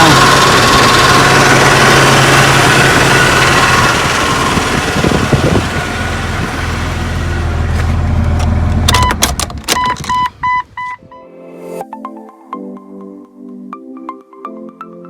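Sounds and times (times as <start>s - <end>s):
car engine idling: 0.0s - 10.8s
short high beeps: 8.9s - 11.3s.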